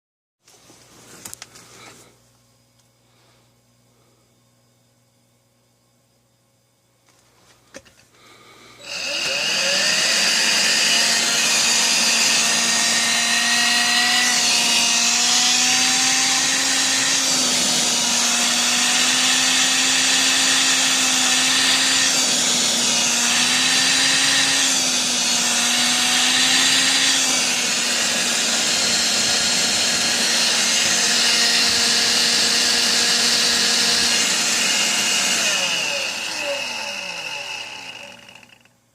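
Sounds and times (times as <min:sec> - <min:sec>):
stick vacuum motor whine: 0:07.7 - 0:38.8.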